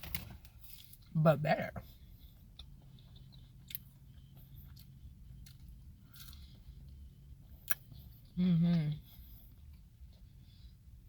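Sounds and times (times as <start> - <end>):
faint low hum: 0.0 - 11.0
chewing fries: 1.8 - 8.4.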